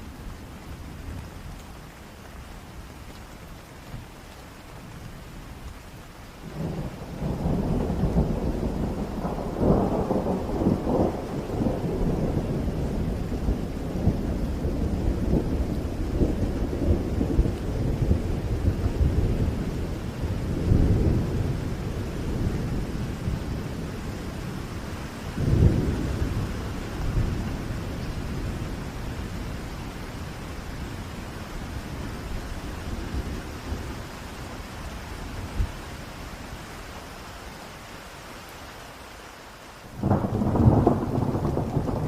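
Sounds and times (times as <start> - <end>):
heavy rain falling: 0.0 - 42.0
thunder rumbling: 6.5 - 34.1, 39.9 - 42.0.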